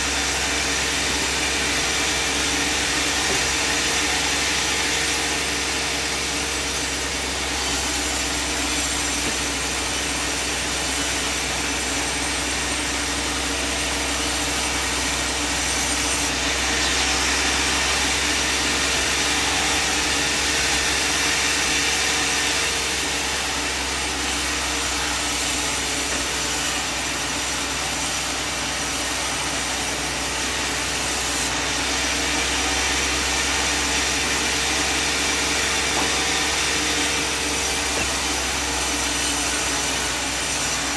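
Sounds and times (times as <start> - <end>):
band sawmill sawing timber: 0.0 - 40.9.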